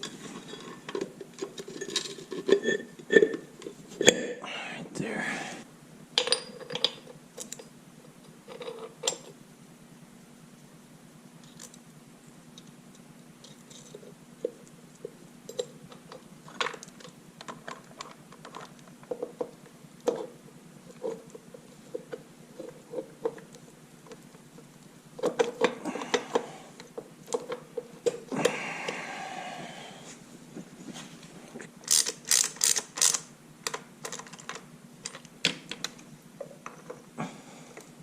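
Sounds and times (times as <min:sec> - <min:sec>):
metal tools clicking and clinking: 0:31.9 - 0:33.2.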